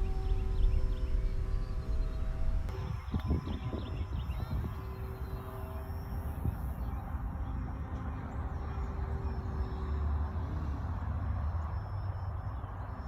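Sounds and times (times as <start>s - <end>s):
wind buffeting microphone: 0.0s - 13.0s
small electric plane motor whine: 2.7s - 11.8s.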